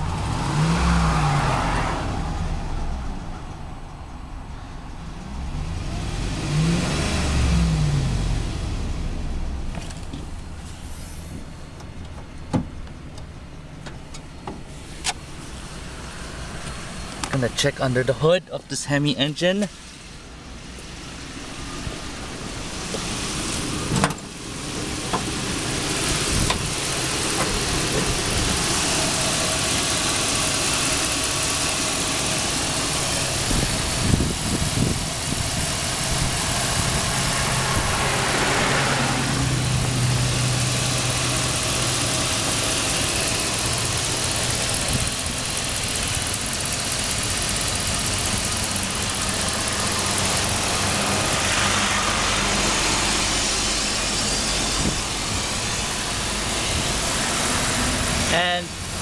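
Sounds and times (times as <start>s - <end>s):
engine idling: 19.6s - 38.5s, 39.2s - 59.0s.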